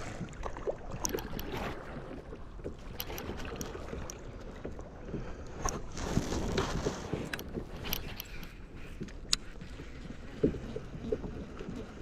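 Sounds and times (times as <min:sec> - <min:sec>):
water splashing around a kayak: 0:00.0 - 0:12.0.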